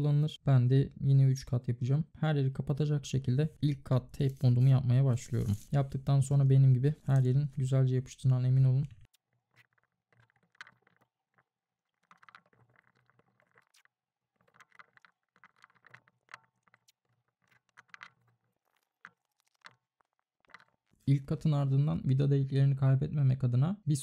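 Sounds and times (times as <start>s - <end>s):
tape crinkling and rubbing: 4.0s - 7.6s, 9.0s - 21.1s.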